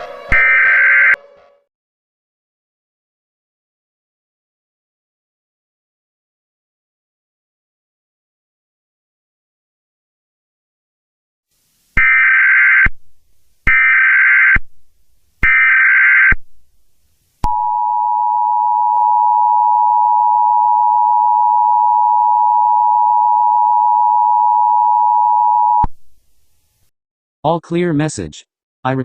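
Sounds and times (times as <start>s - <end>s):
two-tone attention signal: 0.0s - 1.3s
digital data tone bursts: 0.3s - 1.2s.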